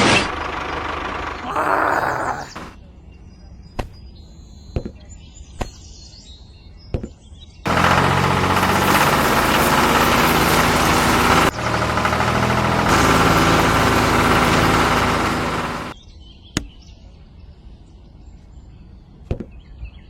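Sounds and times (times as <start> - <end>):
motor droning: 7.7 - 16.0.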